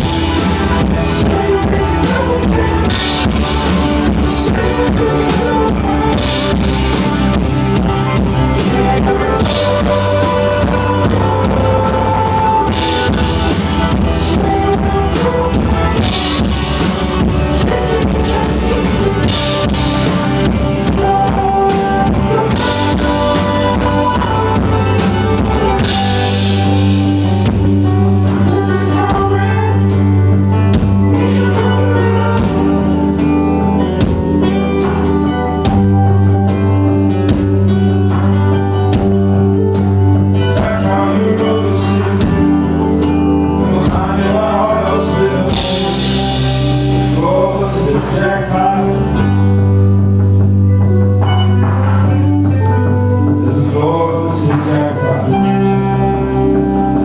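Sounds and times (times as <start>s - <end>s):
drum beat: 0.0s - 26.9s
person singing: 0.0s - 50.0s, 50.8s - 57.0s
guitars: 0.0s - 57.0s
low bass notes: 0.0s - 57.0s.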